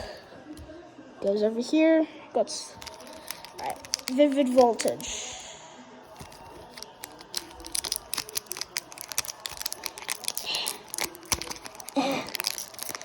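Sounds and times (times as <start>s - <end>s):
foil pack crinkling: 2.8s - 5.1s, 6.1s - 13.0s.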